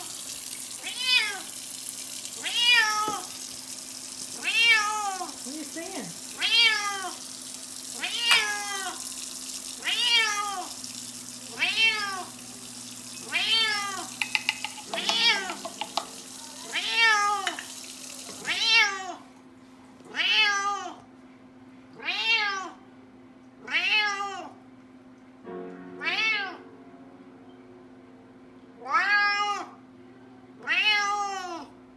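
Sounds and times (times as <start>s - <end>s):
cat meowing: 0.8s - 1.5s, 2.4s - 3.3s, 4.4s - 5.4s, 6.4s - 7.2s, 8.0s - 9.0s, 9.8s - 10.8s, 11.4s - 12.4s, 13.2s - 14.2s, 14.9s - 15.7s, 16.4s - 17.7s, 20.2s - 21.0s, 28.9s - 29.7s, 30.6s - 31.6s.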